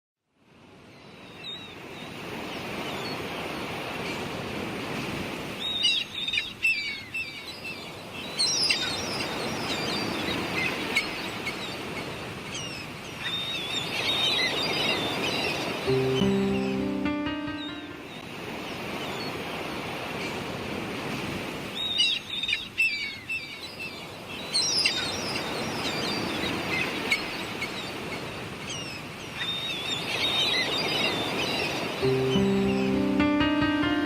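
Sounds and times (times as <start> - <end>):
sea surf rushing: 14.4 - 21.7, 31.0 - 34.0
music: 15.9 - 18.3, 32.0 - 34.0.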